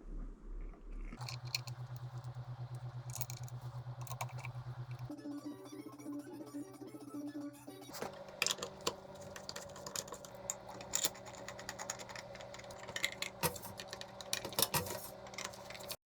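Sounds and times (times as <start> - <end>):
steady machine hum: 1.2 - 5.1, 7.9 - 16.0.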